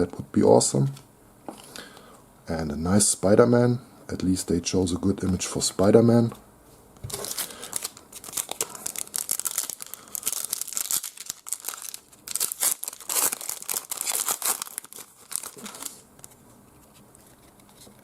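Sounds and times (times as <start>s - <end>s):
wrapper tearing and crinkling: 7.1s - 16.4s.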